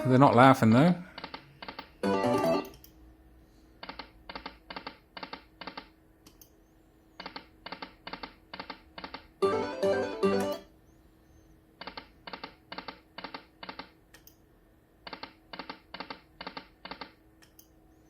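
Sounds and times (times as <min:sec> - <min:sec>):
slot game musical jingle: 0:00.0 - 0:00.5, 0:02.0 - 0:02.7, 0:09.4 - 0:10.7
faint steady hum: 0:00.0 - 0:18.0.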